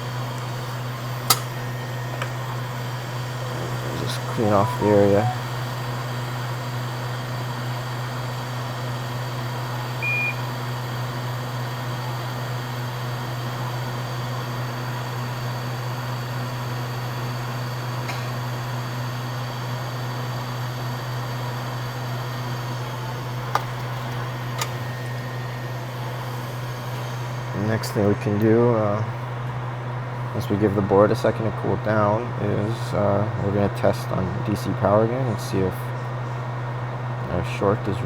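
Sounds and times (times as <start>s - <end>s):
bench equipment hum and fan hiss: 0.0s - 38.0s
short high beep: 4.6s - 5.5s.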